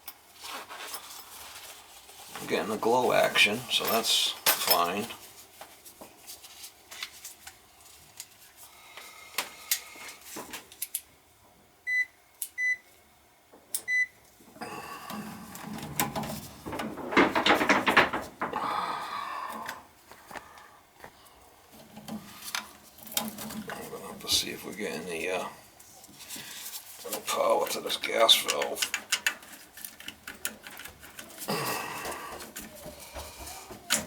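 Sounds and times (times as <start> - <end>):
clattering and rumbling: 15.6 - 18.8
clicks and knocks of tools handled: 28.4 - 31.5.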